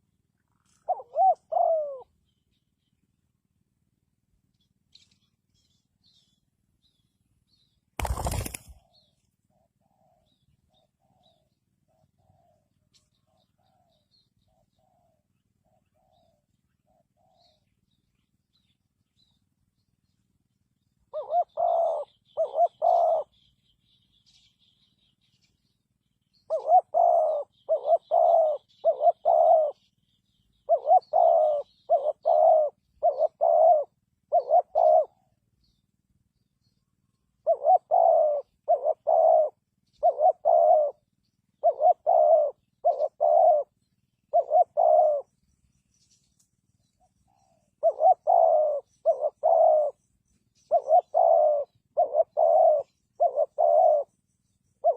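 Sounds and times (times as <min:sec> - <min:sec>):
dove cooing: 0:00.0 - 0:02.3, 0:21.1 - 0:23.5, 0:26.5 - 0:35.4, 0:37.3 - 0:45.4, 0:47.0 - 0:54.2
faint high bird chirps: 0:04.2 - 0:54.9.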